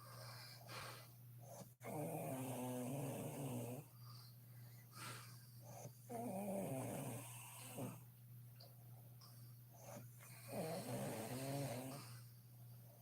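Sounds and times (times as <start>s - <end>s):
woman snoring: 1.8s - 3.9s, 5.8s - 8.0s, 10.4s - 12.2s.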